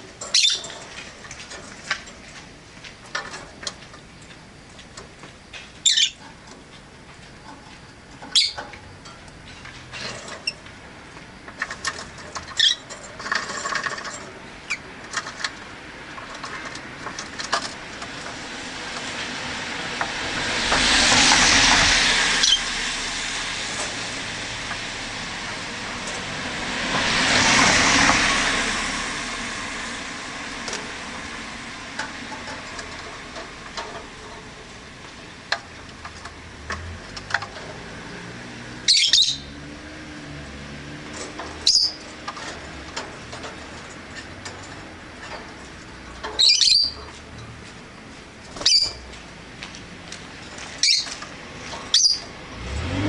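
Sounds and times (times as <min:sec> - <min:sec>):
road vehicles passing: 0:00.0 - 0:53.0
lovebirds chirping: 0:00.2 - 0:00.8, 0:05.8 - 0:06.2, 0:08.3 - 0:08.6, 0:38.9 - 0:39.6, 0:41.6 - 0:42.0, 0:46.4 - 0:47.1, 0:48.6 - 0:49.0, 0:50.8 - 0:51.2, 0:51.9 - 0:52.3.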